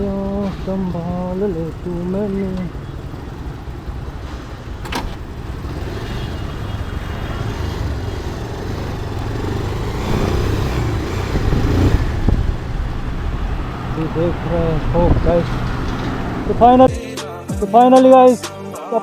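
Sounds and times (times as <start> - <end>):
motorcycle engine rumble: 0.0 - 16.9
road noise: 0.0 - 16.9.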